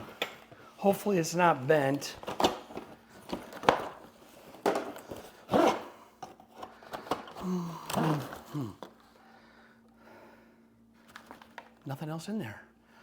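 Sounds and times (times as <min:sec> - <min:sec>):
packaging rustling and scraping: 0:00.0 - 0:09.1, 0:11.0 - 0:11.8.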